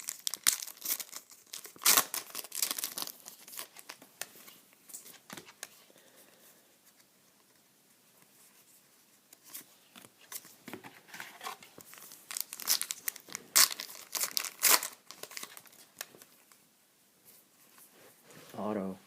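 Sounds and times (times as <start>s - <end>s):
foil wrapper tearing and crinkling: 0.0s - 4.0s, 12.2s - 15.9s.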